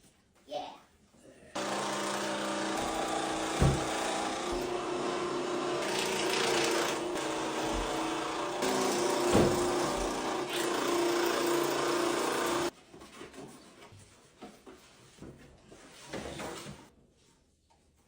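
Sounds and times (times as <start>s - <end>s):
sewing machine motor humming: 1.6s - 12.7s.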